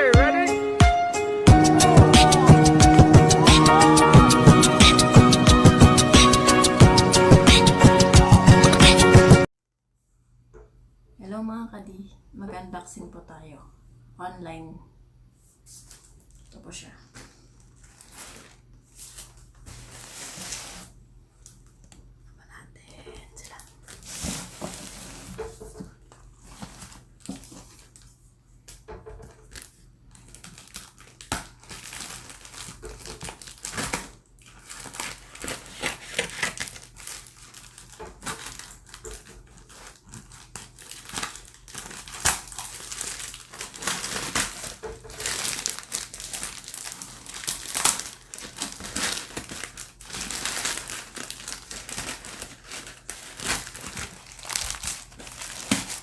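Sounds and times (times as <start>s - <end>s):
packaging crinkling and tearing: 17.6s - 21.8s, 29.4s - 56.0s.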